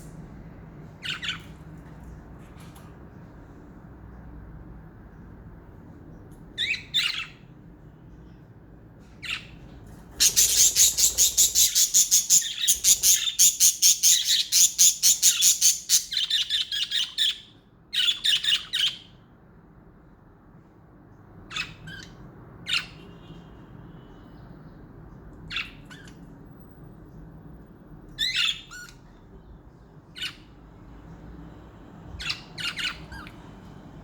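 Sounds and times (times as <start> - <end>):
budgerigars chirping: 6.6 - 7.4, 10.2 - 19.1, 32.2 - 33.4.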